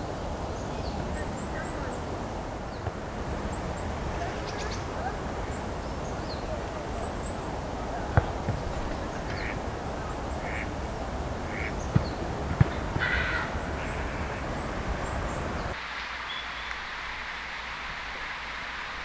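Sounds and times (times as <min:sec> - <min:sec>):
small birds chirping: 0:00.0 - 0:16.8
outdoor hiss: 0:00.0 - 0:19.0
ducks quacking: 0:02.7 - 0:15.8.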